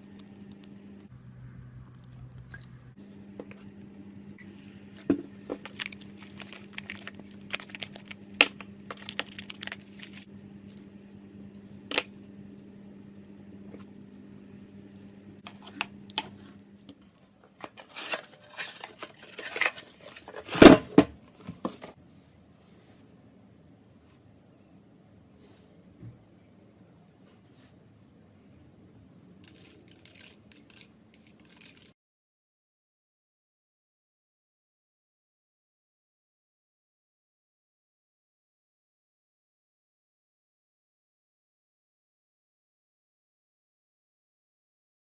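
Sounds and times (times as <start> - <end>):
slime crackling and tearing: 5.6 - 10.2.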